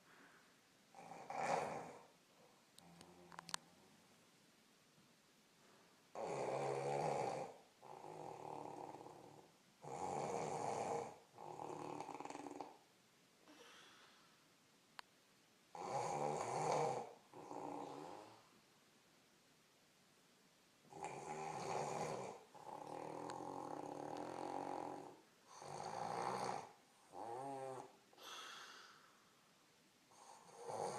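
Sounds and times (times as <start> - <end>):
woman snoring loudly: 1.0 - 2.1, 6.1 - 12.8, 15.7 - 18.3, 20.9 - 27.9, 30.1 - 30.9.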